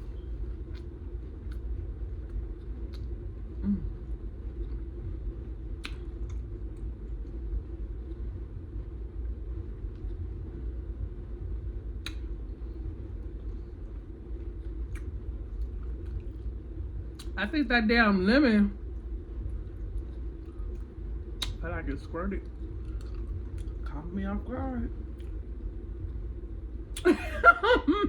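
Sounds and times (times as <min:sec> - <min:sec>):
chewing with mouth smacks: 0:00.0 - 0:08.3, 0:12.0 - 0:17.4, 0:18.8 - 0:24.0, 0:25.1 - 0:25.5
steady low rumble: 0:00.0 - 0:28.0.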